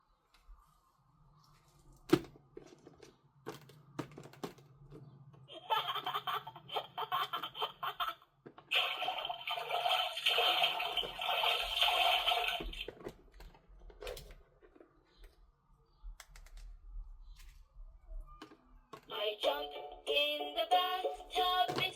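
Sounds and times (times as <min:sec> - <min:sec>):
handling clicks and knocks: 0:02.1 - 0:05.4.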